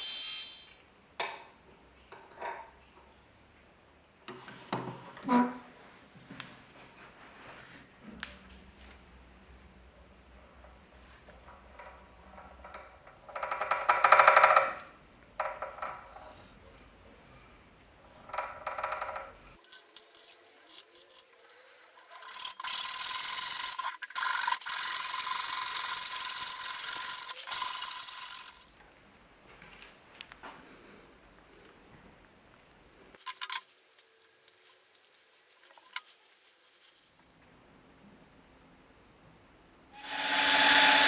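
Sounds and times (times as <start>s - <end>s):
filing metal: 40.0s - 41.0s.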